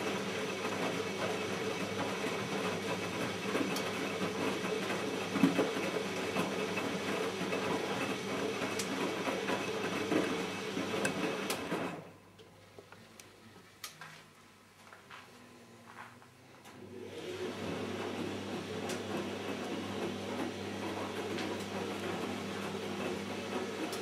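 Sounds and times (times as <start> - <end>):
washing machine drum tumbling laundry: 0.0 - 12.1, 17.2 - 24.0.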